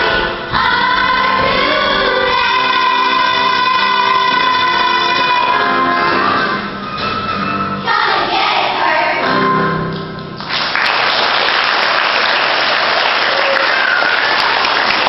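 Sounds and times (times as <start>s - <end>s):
audience applause: 10.4s - 15.0s.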